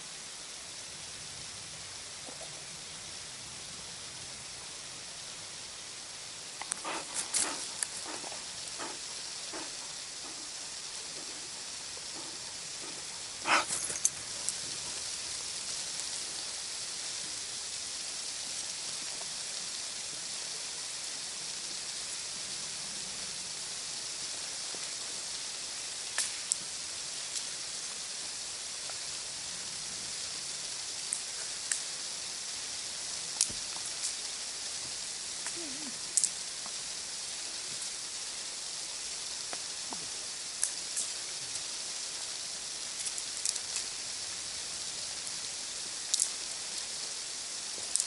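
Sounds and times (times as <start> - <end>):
falling water hissing: 0.0 - 48.0.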